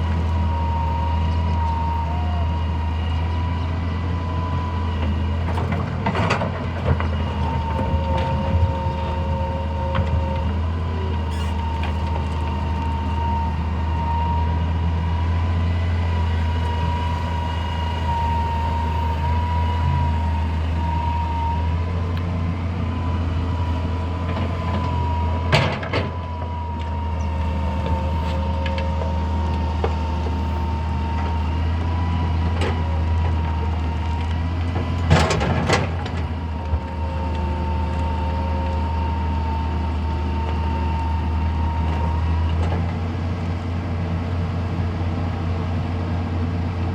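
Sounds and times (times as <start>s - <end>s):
excavator diesel engine droning: 0.0s - 46.9s.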